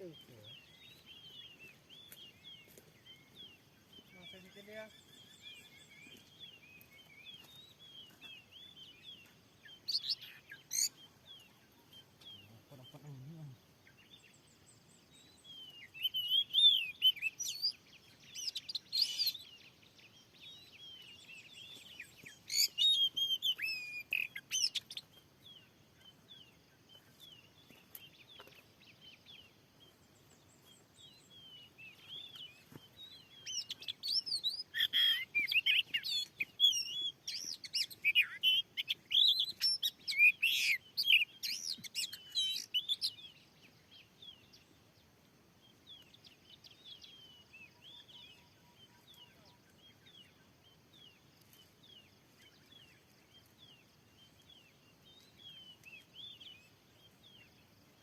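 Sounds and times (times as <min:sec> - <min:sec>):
bird singing whistled phrases: 0:15.6 - 0:17.8, 0:21.7 - 0:25.0, 0:33.4 - 0:43.3.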